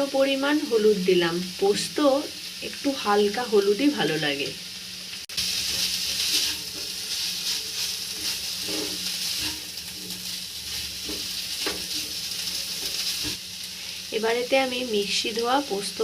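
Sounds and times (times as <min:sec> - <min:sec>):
greens sizzling in oil: 0:00.0 - 0:16.0
spatula scraping a pan: 0:05.4 - 0:13.4.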